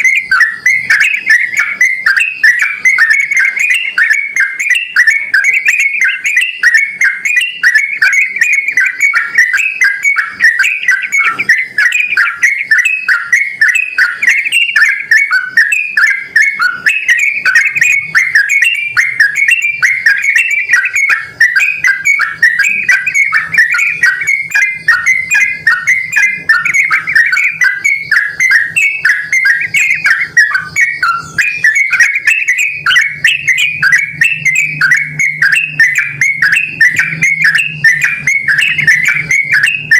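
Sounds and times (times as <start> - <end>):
bird chirping: 0.0 - 39.9.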